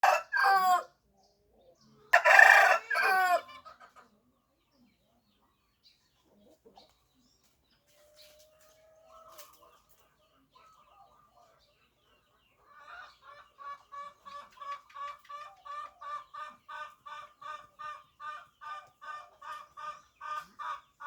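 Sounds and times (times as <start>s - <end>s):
rooster crowing: 0.0s - 0.9s, 2.2s - 3.5s.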